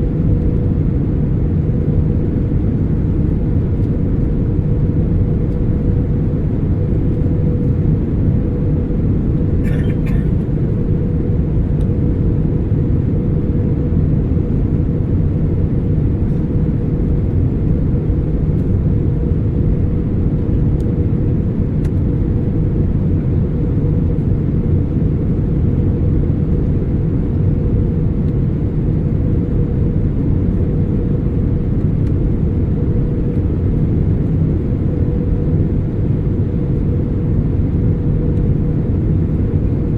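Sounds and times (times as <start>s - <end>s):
steady hum: 0.0s - 12.8s
airplane cabin engine rumble: 0.0s - 39.9s.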